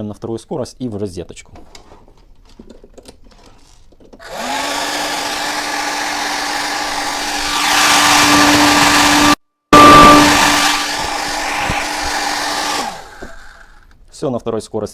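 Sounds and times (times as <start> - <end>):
hair dryer running: 4.2 - 13.8.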